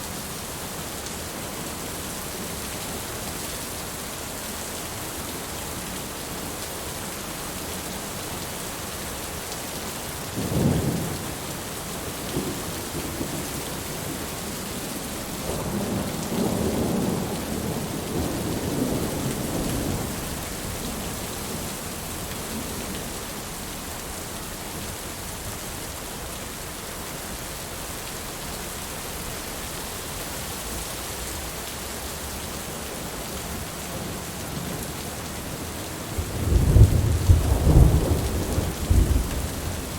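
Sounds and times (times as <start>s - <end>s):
heavy steady rain: 0.0s - 39.9s
thunder clap and rumble: 36.1s - 39.9s.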